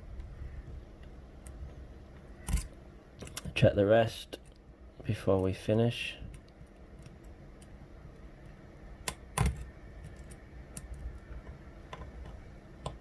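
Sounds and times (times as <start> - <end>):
lock pick clicking on pins: 2.4 - 3.5, 9.0 - 11.2.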